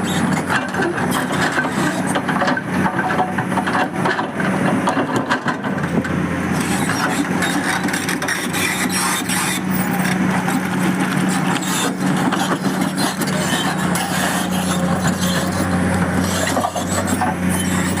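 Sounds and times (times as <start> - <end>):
excavator engine running: 0.0 - 18.0
clatter and knocks: 0.4 - 6.1.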